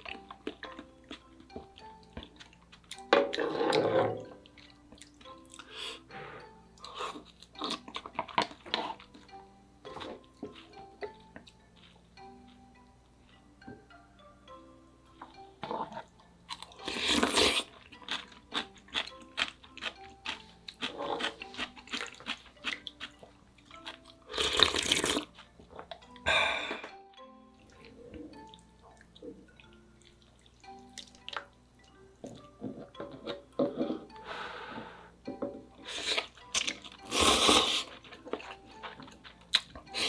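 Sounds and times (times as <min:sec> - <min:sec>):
wet chewing: 0:00.0 - 0:05.8, 0:06.8 - 0:09.3, 0:15.6 - 0:26.2, 0:35.8 - 0:40.0
soft background music: 0:00.0 - 0:40.0
loud noodle slurps: 0:16.8 - 0:17.8, 0:24.3 - 0:25.3, 0:35.9 - 0:36.3, 0:37.0 - 0:38.0.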